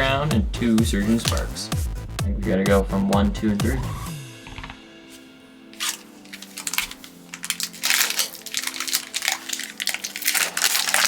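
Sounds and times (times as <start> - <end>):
foil wrapper crinkling and tearing: 5.8 - 11.0.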